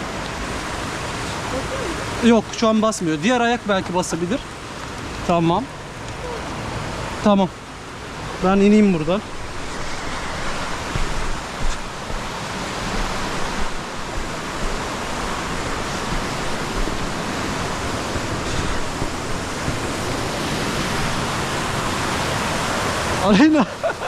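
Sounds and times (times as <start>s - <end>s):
waterfall rushing onto rocks: 0.0s - 24.0s.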